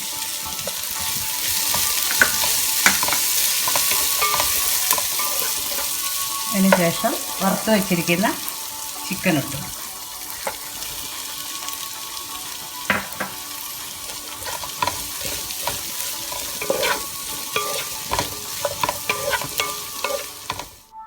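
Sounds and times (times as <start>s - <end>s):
food sizzling in hot oil: 0.0s - 21.0s
spatula scraping a pan: 0.4s - 7.7s, 13.1s - 20.8s.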